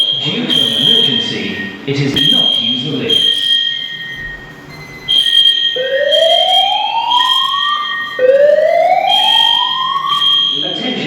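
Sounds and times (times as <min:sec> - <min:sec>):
high alarm beeping tone: 0:00.0 - 0:11.0
whooping alarm tone sweeping upward: 0:05.1 - 0:11.0.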